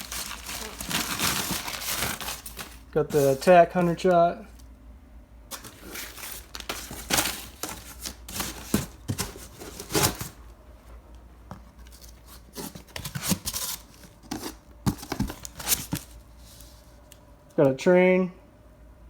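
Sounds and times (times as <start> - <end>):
cardboard rustling and scraping: 0.0 - 4.6, 5.5 - 17.0.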